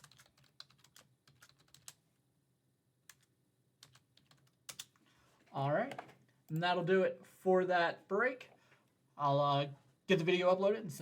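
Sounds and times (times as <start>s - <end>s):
faint computer keyboard typing: 0.0s - 2.0s, 3.0s - 5.0s.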